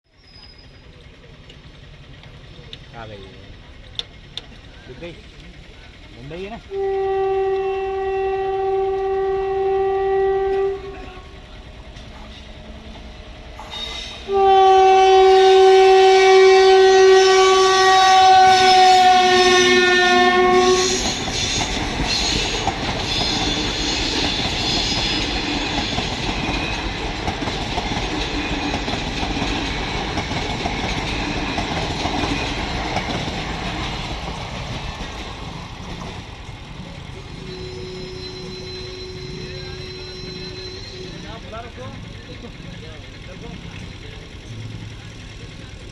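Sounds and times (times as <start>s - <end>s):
train wheels rumbling on rails: 0.1s - 45.9s
train horn blast: 6.7s - 11.6s, 13.7s - 25.2s, 37.4s - 41.6s.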